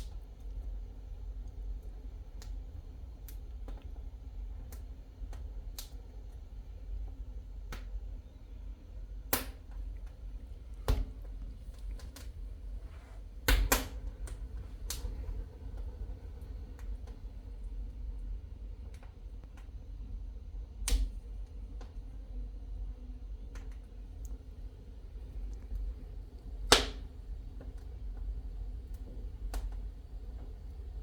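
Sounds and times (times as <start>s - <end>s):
low steady rumble: 0.0s - 31.0s
wood fire crackling: 0.0s - 31.0s
fire pops: 9.1s - 19.8s, 20.8s - 22.1s, 23.4s - 31.0s.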